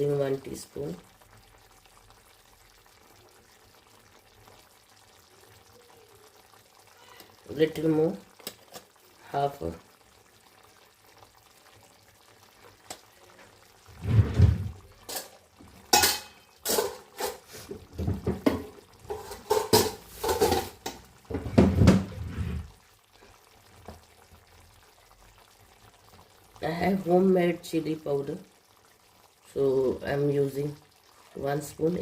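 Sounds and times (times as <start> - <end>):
spoon scraping a wok: 19.1 - 21.0.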